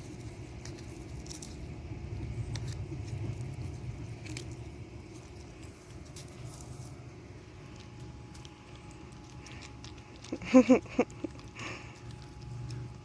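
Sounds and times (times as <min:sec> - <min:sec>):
dog crunching pea pods: 0:00.0 - 0:13.0
low steady rumble: 0:00.0 - 0:13.0.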